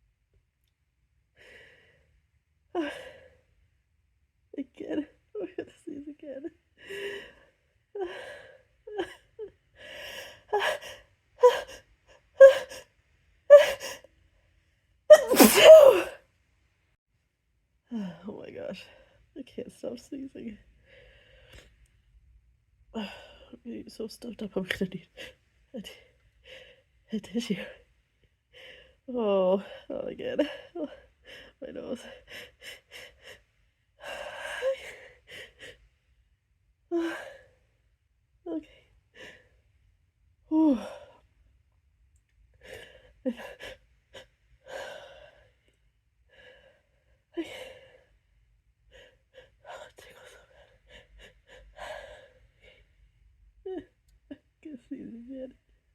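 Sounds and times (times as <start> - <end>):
person gasping: 15.1 - 16.1
person sneezing: 15.1 - 16.2
soft breaths: 20.6 - 21.9.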